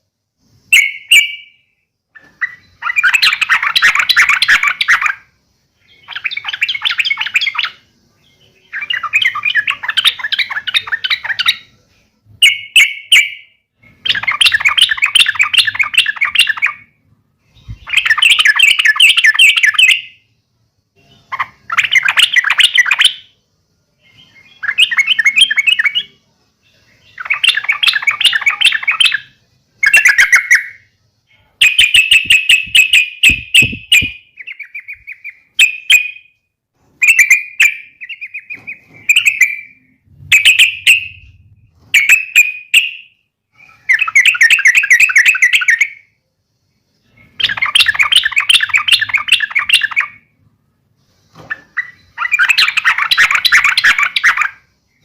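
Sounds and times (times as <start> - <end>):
bird rapid chattering calls: 31.6 - 36.2, 47.3 - 50.2, 51.5 - 54.6.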